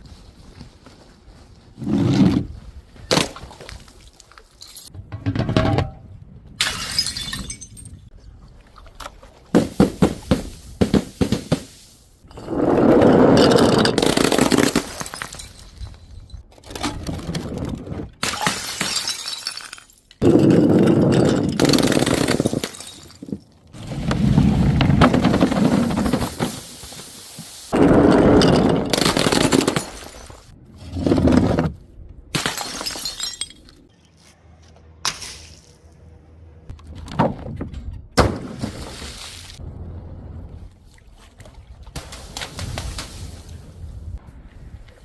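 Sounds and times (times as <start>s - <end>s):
glass bottles shattering: 4.5s - 4.9s, 6.6s - 8.0s, 13.4s - 16.3s, 18.2s - 23.5s, 28.3s - 30.5s, 32.4s - 33.9s
glass shards rattling: 4.5s - 4.9s, 32.4s - 33.9s.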